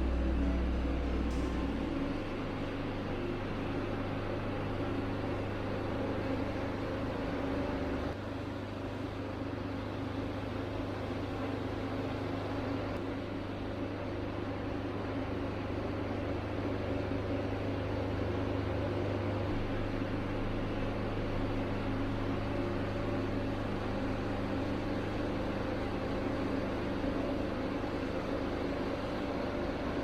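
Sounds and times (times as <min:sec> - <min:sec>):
machine humming with hiss: 0:00.0 - 0:17.9.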